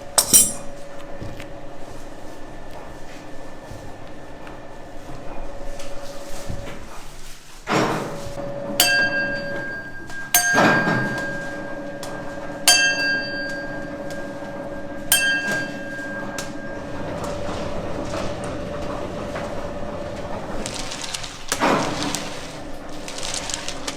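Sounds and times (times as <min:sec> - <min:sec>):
sharp ringing clinks: 0:00.0 - 0:00.7.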